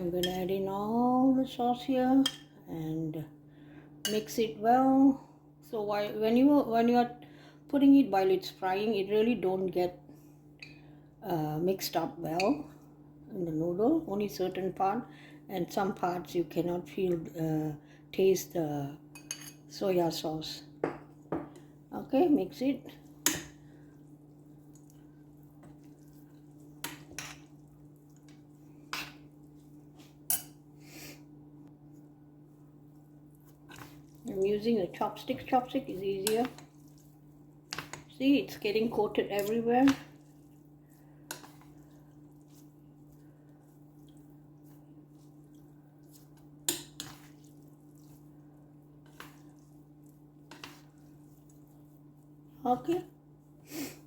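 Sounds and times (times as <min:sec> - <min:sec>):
chopsticks tossing noodles: 0:22.4 - 0:30.7, 0:31.8 - 0:53.6.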